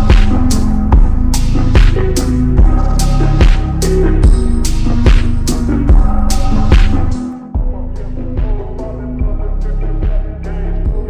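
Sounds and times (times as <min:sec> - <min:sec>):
music with heavy bass beat: 0:00.0 - 0:11.0.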